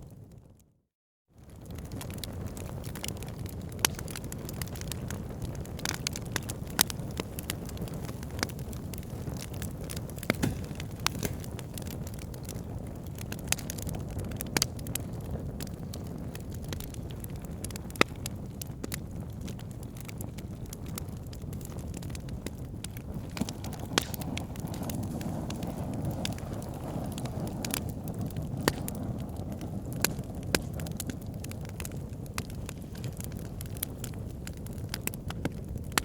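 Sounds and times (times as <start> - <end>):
sharp pops and snaps of fire: 1.4 - 36.0
wood fire crackling: 1.4 - 36.0.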